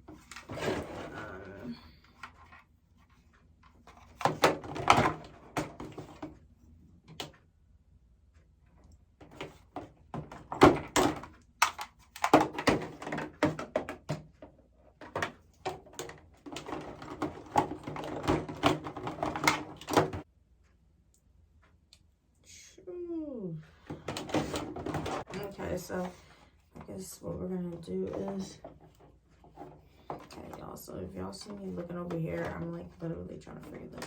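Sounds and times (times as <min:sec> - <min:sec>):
parts clicking knocking and rattling: 0:09.2 - 0:20.3.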